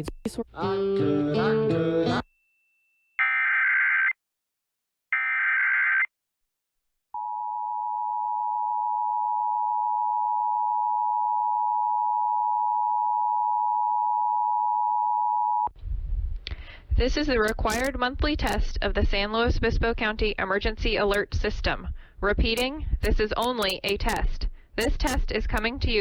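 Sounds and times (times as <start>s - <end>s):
steady two-tone alert tone: 22.6s - 24.2s, 24.8s - 25.2s.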